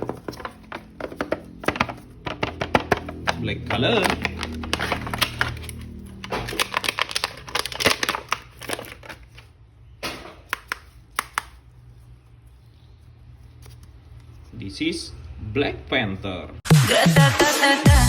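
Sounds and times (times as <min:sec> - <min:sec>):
packaging crinkling: 0:00.0 - 0:09.6.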